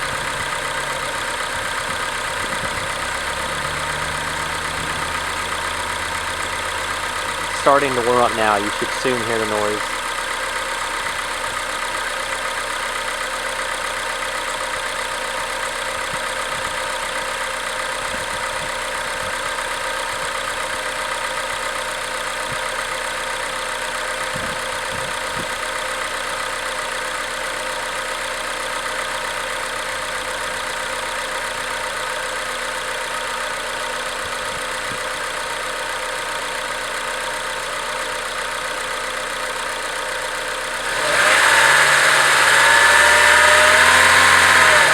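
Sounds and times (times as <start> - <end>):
car engine idling: 0.0 - 44.9.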